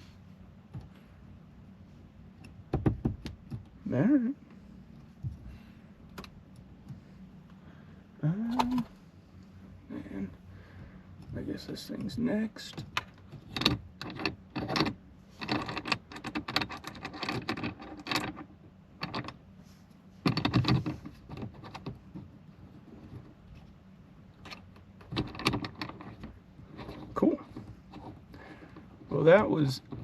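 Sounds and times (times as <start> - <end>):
plastic parts clicking and rattling: 12.8 - 19.4, 20.2 - 22.3, 24.4 - 30.0.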